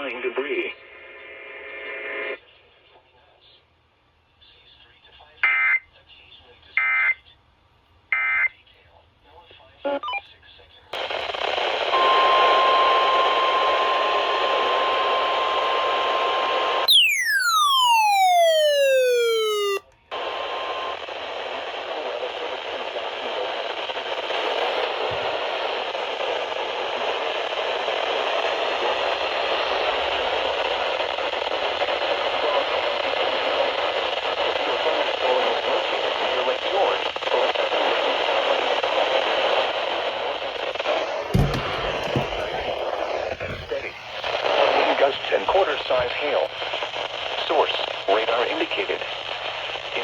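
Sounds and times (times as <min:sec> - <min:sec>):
radio static hiss: 0:00.0 - 0:03.7, 0:10.3 - 0:16.9, 0:17.9 - 0:50.0
electronic tone sweeping downward: 0:16.9 - 0:19.8.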